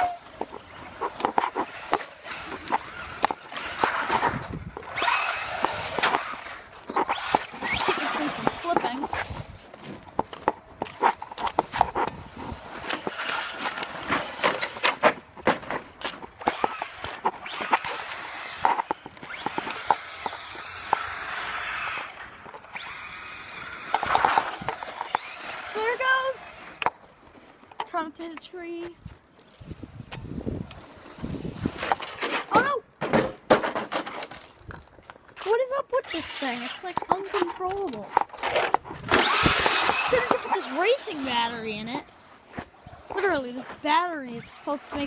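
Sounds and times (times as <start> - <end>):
electric motor whining: 0.0 - 9.0, 16.4 - 26.9, 38.9 - 41.8
toy truck knocks and rattles: 0.4 - 9.1, 10.2 - 27.0, 31.8 - 41.4.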